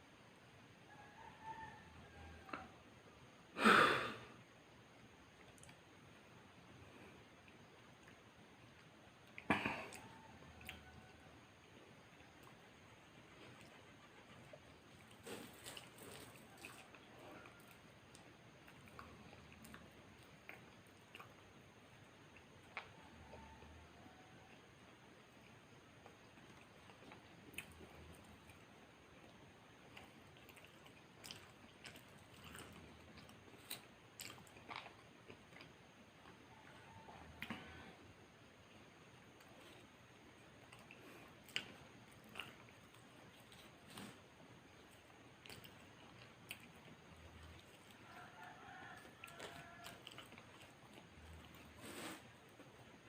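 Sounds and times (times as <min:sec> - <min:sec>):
rooster crowing faintly: 0:00.7 - 0:04.4, 0:09.4 - 0:20.3, 0:22.6 - 0:28.3, 0:31.2 - 0:44.2, 0:44.8 - 0:53.0
person chewing food: 0:05.3 - 0:23.5, 0:24.3 - 0:53.0
chewing and biting burger: 0:12.2 - 0:21.4.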